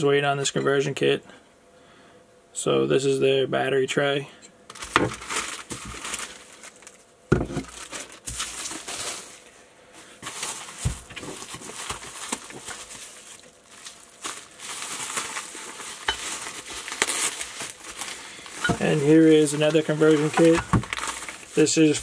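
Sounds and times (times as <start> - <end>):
plastic packaging crinkling: 4.7 - 22.0.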